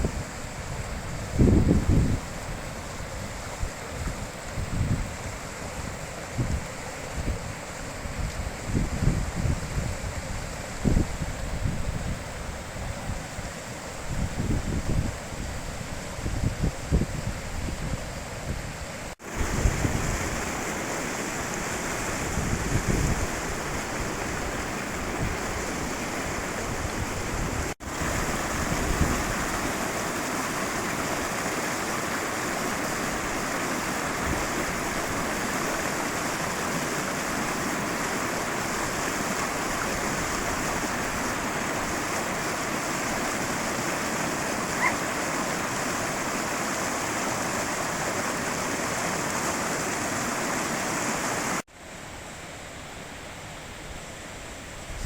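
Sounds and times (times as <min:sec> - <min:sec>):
river rushing: 0:19.0 - 0:54.8.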